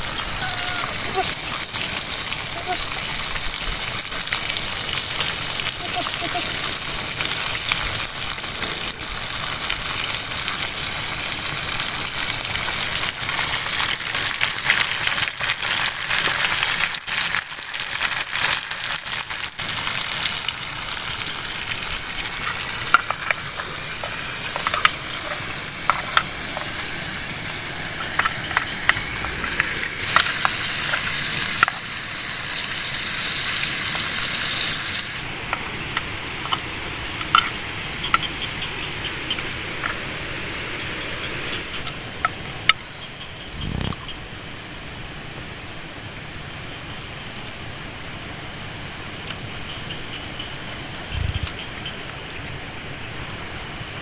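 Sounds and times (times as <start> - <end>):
oil popping: 0.0 - 38.3
food sizzling in hot oil: 0.0 - 41.9.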